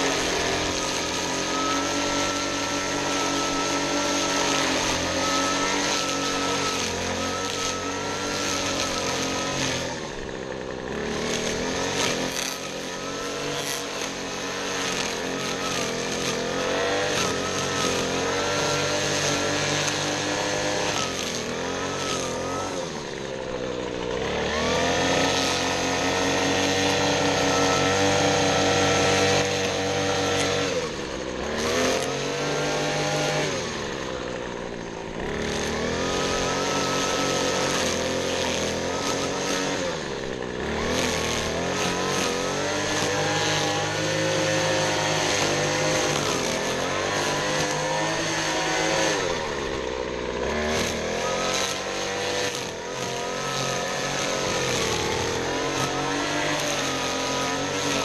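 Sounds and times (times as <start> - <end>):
small gasoline engine revving: 0.0 - 58.0.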